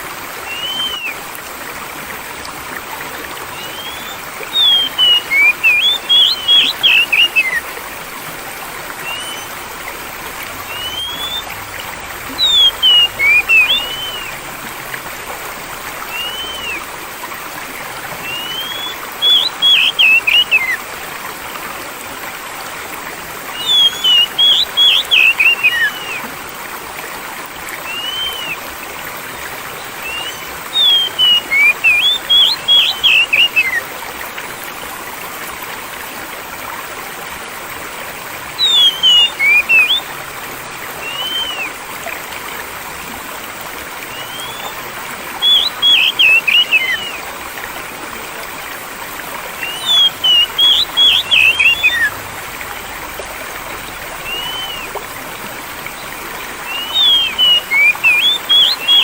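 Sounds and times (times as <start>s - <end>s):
flowing water rushing: 0.0s - 59.0s
bird song whistled phrases: 0.4s - 1.2s, 3.1s - 8.4s, 9.0s - 9.6s, 10.6s - 11.6s, 12.3s - 14.4s, 16.0s - 16.9s, 18.2s - 20.8s, 23.5s - 26.3s, 27.8s - 28.6s, 30.0s - 34.2s, 38.6s - 40.1s, 41.0s - 41.8s, 44.1s - 47.3s, 49.6s - 52.2s, 54.2s - 55.0s, 56.0s - 59.0s.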